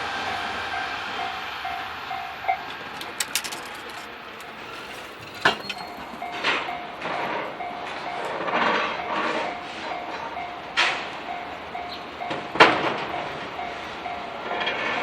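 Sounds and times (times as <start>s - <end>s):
train noise: 0.0s - 15.0s
level crossing bell ringing: 0.3s - 4.6s, 5.2s - 14.4s.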